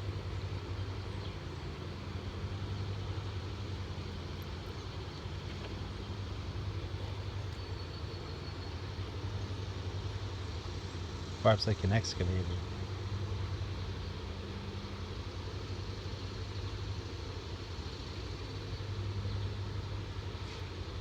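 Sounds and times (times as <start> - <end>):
low mechanical hum: 0.0 - 21.0
constant rushing noise: 10.5 - 21.0.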